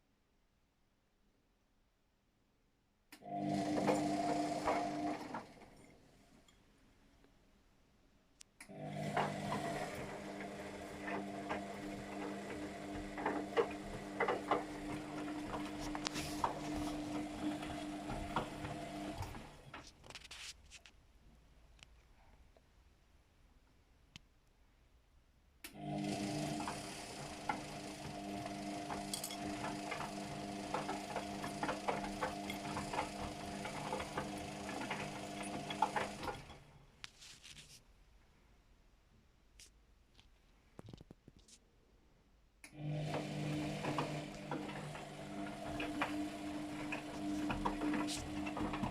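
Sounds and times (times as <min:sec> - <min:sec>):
washing machine motor humming: 0:03.2 - 0:06.0, 0:08.6 - 0:19.8, 0:25.7 - 0:36.8, 0:42.6 - 0:48.9
clicks and knocks of tumbling load: 0:09.0 - 0:20.8, 0:26.6 - 0:36.7, 0:43.1 - 0:48.9.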